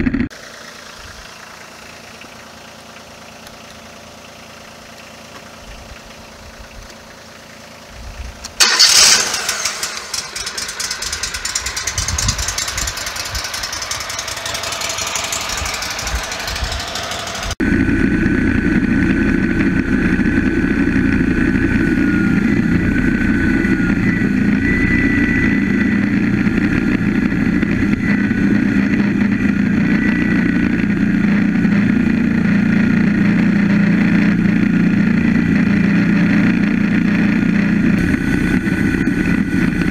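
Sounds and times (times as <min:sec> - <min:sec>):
sawmill gasoline engine running: 0:00.0 - 0:39.9
thin wavering high whine: 0:09.6 - 0:39.9.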